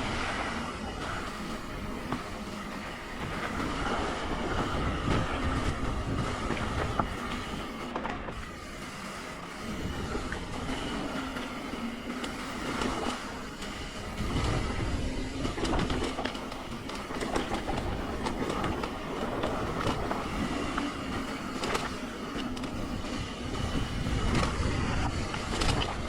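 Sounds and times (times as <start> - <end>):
wind rumble on microphone: 3.1 - 8.5, 14.0 - 26.0.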